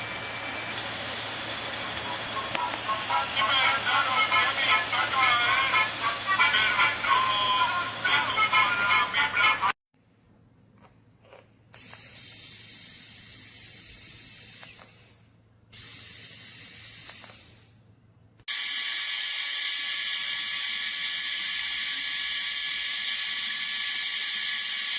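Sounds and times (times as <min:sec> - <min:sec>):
small electric drill whine: 0:00.0 - 0:02.8, 0:18.5 - 0:24.9.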